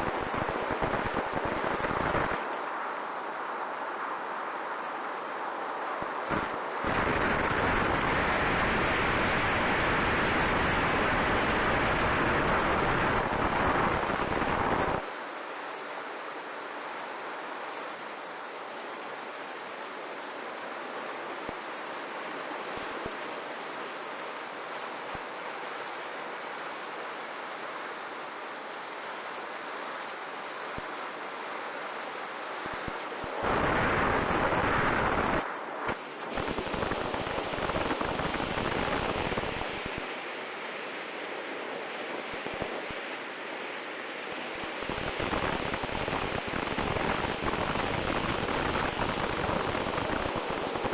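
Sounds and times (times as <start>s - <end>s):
rushing airflow and motor noise: 0.0s - 15.1s, 30.2s - 50.9s.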